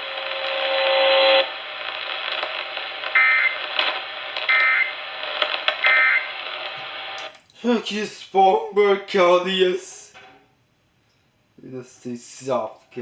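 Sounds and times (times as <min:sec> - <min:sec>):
buzzing data bursts: 0:00.0 - 0:07.2
radio hiss: 0:00.0 - 0:08.0.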